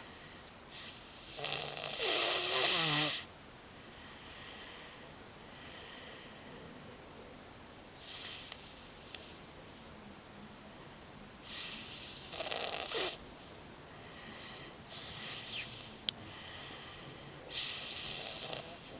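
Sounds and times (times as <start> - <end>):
breathy hissing snores: 0.0 - 3.3, 8.0 - 9.9, 10.6 - 18.9.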